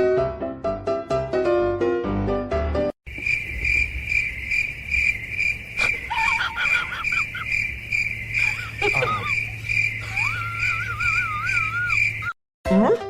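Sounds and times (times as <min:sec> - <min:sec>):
cricket chirping: 0:03.1 - 0:12.4
faint wavering calls: 0:03.4 - 0:12.4.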